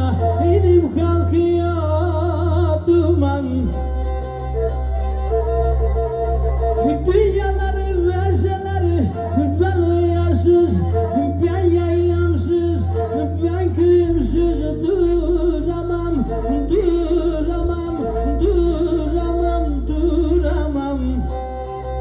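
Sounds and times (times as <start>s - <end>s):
person singing ornamented melody: 0.0s - 22.0s
sustained low bass notes: 0.0s - 22.0s.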